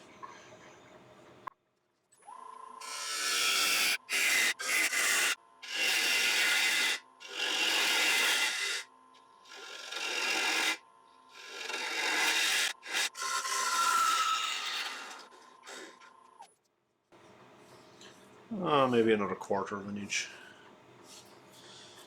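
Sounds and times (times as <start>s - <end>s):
lathe tool cutting wood: 2.8s - 8.9s, 9.5s - 10.8s, 11.4s - 15.4s.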